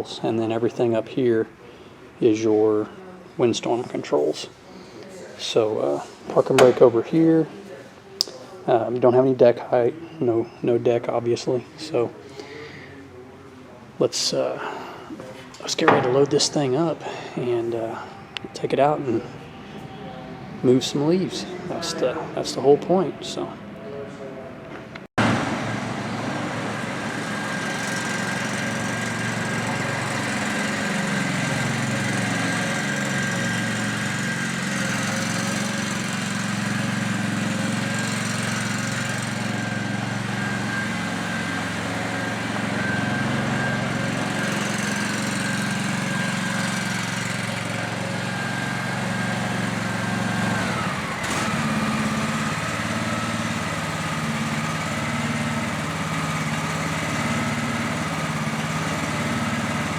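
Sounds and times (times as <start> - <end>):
engine running steadily: 25.2 - 59.9.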